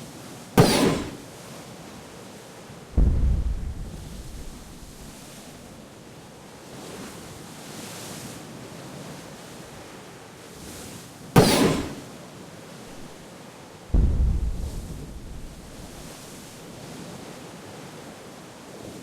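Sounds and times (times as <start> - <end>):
sudden loud crash: 0.6 - 1.2, 3.0 - 5.2, 11.4 - 12.0, 13.9 - 16.5
steady rushing noise: 3.0 - 5.4, 13.9 - 16.6.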